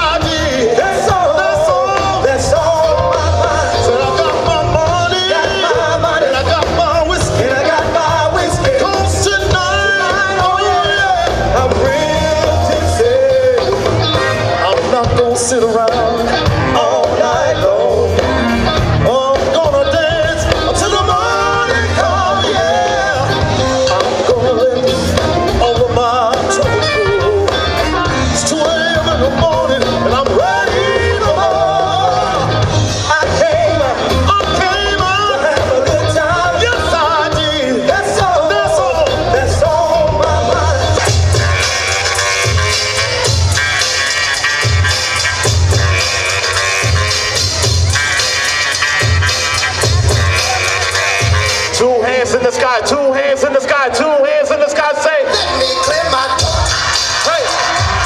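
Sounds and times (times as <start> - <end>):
person singing: 0.0 - 43.4
bass-heavy music: 0.0 - 58.0.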